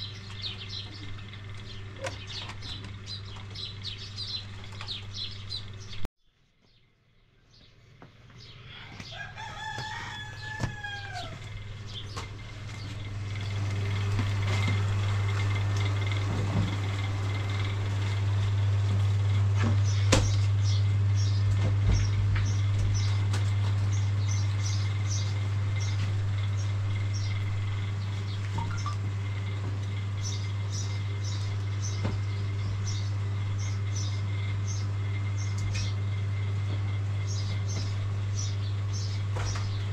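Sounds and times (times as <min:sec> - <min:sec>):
steady low hum: 0:00.0 - 0:06.1, 0:06.9 - 0:39.9
rooster crowing: 0:09.0 - 0:11.6.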